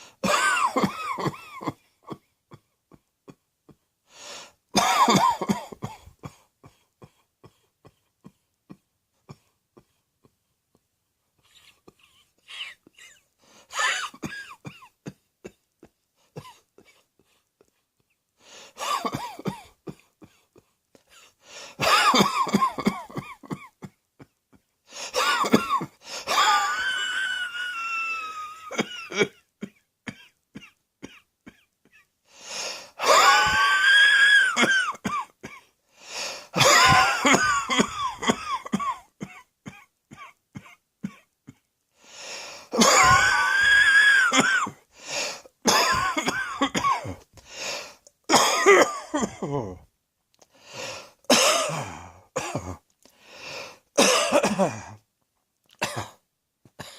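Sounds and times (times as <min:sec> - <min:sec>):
person coughing in fits: 0:00.1 - 0:03.8, 0:04.8 - 0:10.0, 0:11.8 - 0:17.1, 0:18.8 - 0:26.6, 0:28.4 - 0:32.0, 0:34.6 - 0:35.7, 0:36.5 - 0:41.6, 0:42.8 - 0:43.3, 0:44.3 - 0:44.8, 0:45.6 - 0:47.3, 0:48.3 - 0:49.8, 0:51.3 - 0:52.8, 0:54.0 - 0:55.0, 0:55.8 - 0:56.9.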